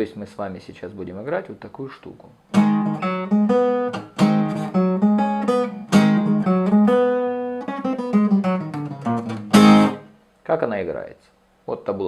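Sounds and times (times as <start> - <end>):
acoustic guitar playing: 2.5 - 10.2.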